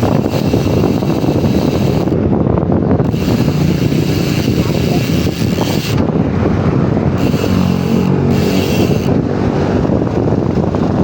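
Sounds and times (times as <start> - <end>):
bicycle freehub buzzing: 0.0 - 11.0
wind on microphone: 0.0 - 11.0
low rumble: 5.5 - 11.0.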